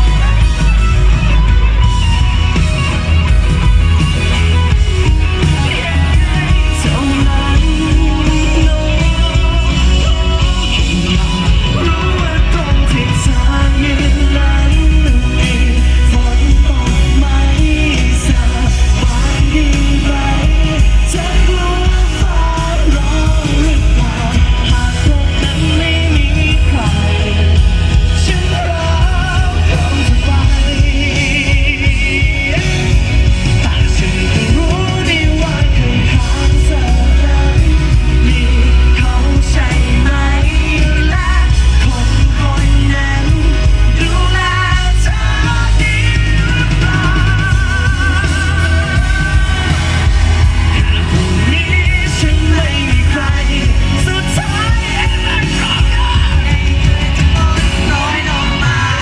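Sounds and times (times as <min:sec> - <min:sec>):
lead vocal singing: 0:00.0 - 0:59.0
pop-rock band playing: 0:00.0 - 0:59.0.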